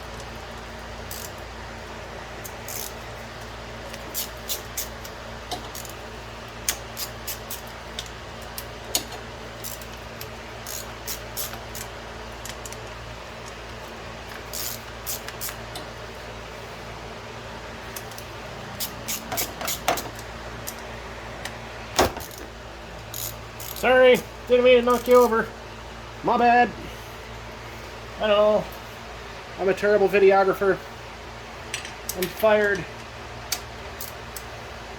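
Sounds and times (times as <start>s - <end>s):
steady low hum: 0.0s - 34.9s
metallic clicks of hand tools: 1.1s - 1.4s, 2.4s - 3.0s, 18.0s - 20.8s, 23.0s - 23.9s.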